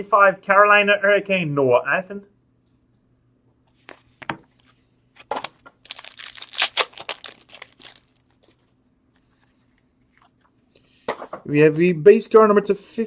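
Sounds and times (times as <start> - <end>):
foil wrapper crinkling: 5.2 - 8.7
foil wrapper tearing: 5.3 - 8.7.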